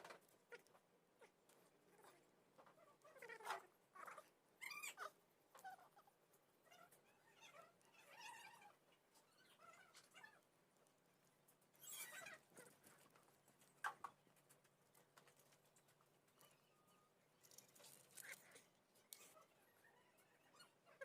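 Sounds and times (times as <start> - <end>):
rustling: 0.0 - 21.0
faint animal cries: 0.5 - 10.4, 11.8 - 13.0, 18.2 - 21.0.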